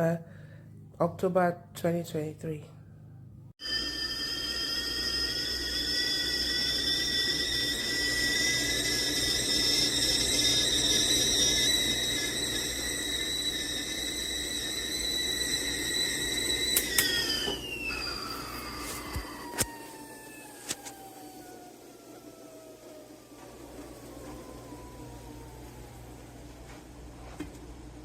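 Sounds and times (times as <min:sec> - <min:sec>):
tea kettle whistling: 0:03.6 - 0:28.0.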